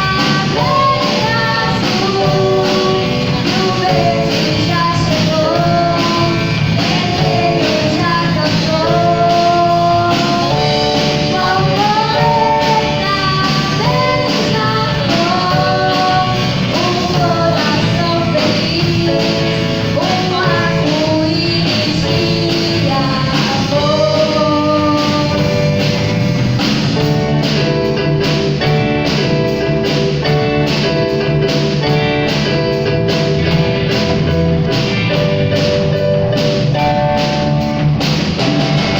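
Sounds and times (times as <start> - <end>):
person singing: 0.0 - 26.0
guitar: 0.0 - 38.9
steady drum beat: 0.0 - 38.9.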